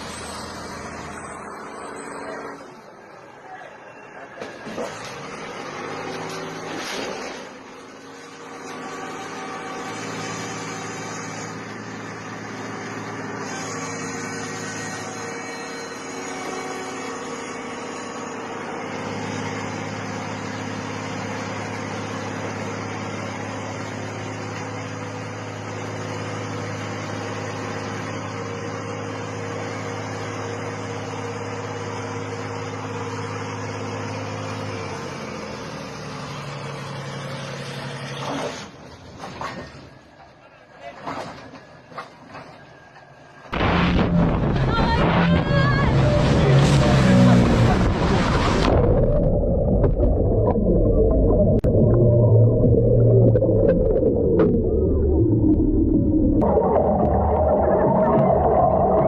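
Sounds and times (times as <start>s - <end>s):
engine humming: 41.4s - 59.0s.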